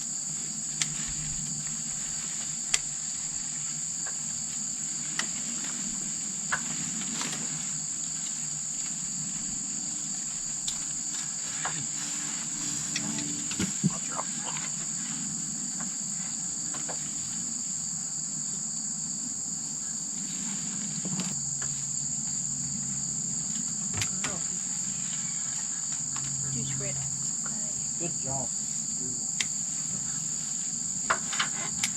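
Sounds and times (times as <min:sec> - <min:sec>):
crickets singing: 0:00.0 - 0:31.9.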